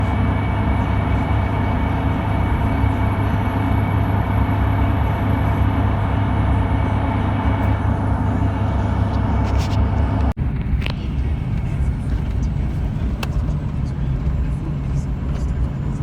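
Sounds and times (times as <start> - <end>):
vehicle engine rumble: 0.0 - 16.0.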